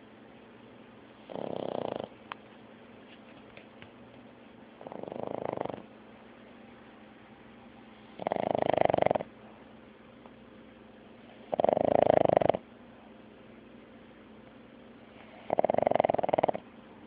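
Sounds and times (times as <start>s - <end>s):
dog snoring: 1.2s - 2.2s, 4.8s - 5.9s, 8.0s - 9.3s, 11.2s - 12.7s, 15.1s - 16.7s.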